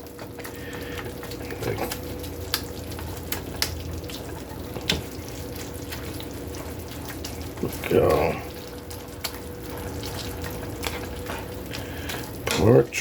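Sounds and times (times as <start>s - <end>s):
meat sizzling in a frying pan: 0.0s - 13.0s
utensil clicking against a pan: 1.2s - 5.1s.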